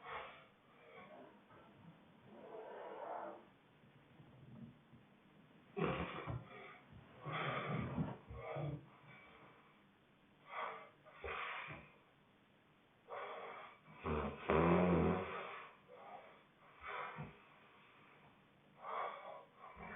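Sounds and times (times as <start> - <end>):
person snoring with snorts: 14.0 - 15.4.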